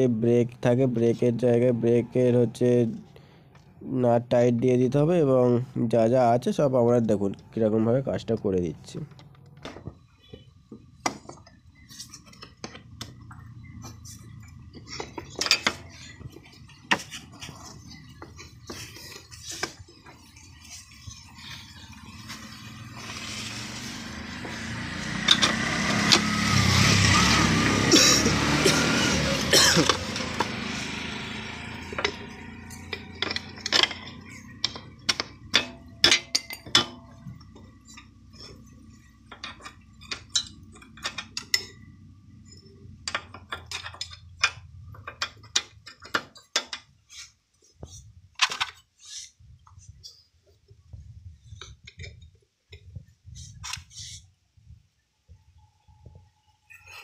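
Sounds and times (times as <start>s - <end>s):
metallic clinks of hand tools: 31.9s - 38.1s.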